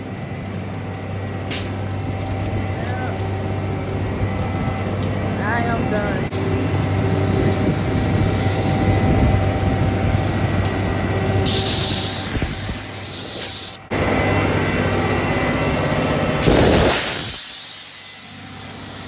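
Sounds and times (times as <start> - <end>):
truck engine humming: 0.0 - 16.8
hose water spraying: 6.3 - 13.9, 16.4 - 19.0.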